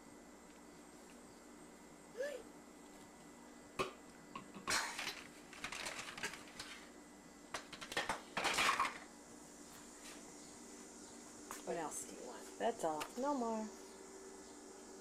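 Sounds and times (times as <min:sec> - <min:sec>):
toy dishes clattering: 0:08.0 - 0:09.0.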